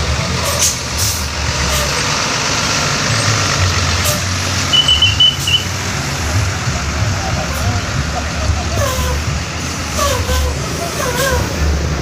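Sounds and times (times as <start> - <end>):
bus engines rumbling: 0.0 - 12.0
air brakes hissing: 0.4 - 2.0, 8.8 - 11.6
short high-pitched beeps: 4.8 - 5.6.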